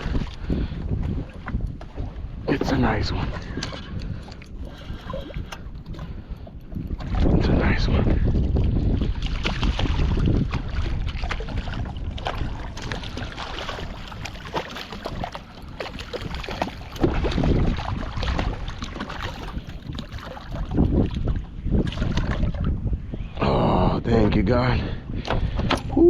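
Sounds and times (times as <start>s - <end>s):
wind buffeting microphone: 0.0s - 26.0s
clicks and splashes: 9.1s - 21.1s.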